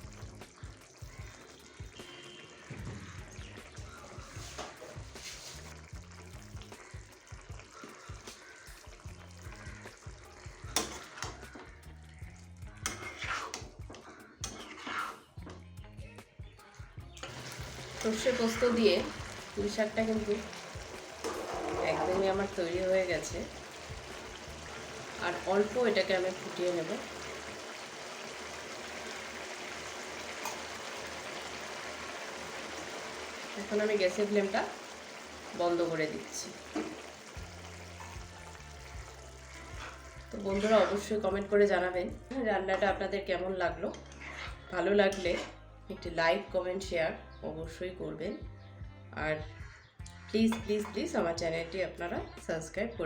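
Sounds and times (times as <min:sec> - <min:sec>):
curry simmering with bubbling hiss: 0:00.0 - 0:15.4, 0:17.2 - 0:41.8
background music: 0:00.0 - 0:53.0
spatula scraping a pan: 0:04.2 - 0:05.8, 0:10.6 - 0:11.7, 0:12.8 - 0:15.4, 0:17.2 - 0:33.7, 0:36.6 - 0:41.2, 0:44.0 - 0:45.6.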